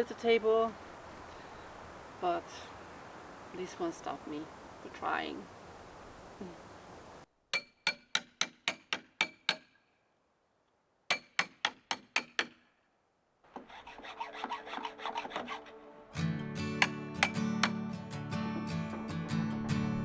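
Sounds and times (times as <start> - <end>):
hand tool striking wood: 7.5 - 9.8, 11.1 - 12.7, 16.8 - 17.9
scraping and rubbing on wood: 13.5 - 15.8.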